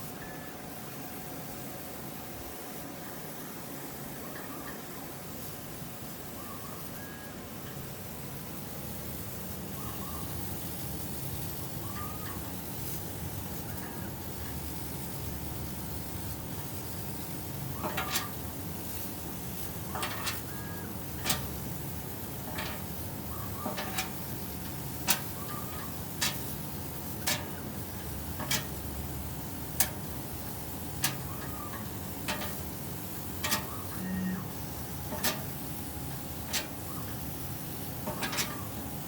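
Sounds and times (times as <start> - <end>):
machine humming: 17.6 - 39.0.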